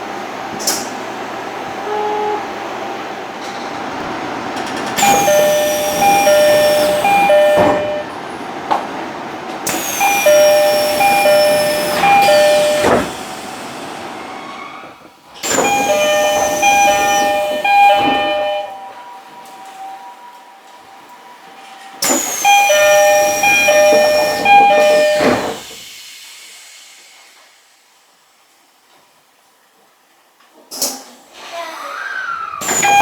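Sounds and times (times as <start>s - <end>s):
train doors sliding: 0.3s - 26.0s, 30.8s - 33.0s
two-note door chime: 5.0s - 8.1s, 10.0s - 13.1s, 15.5s - 19.0s, 22.2s - 25.6s, 32.7s - 33.0s.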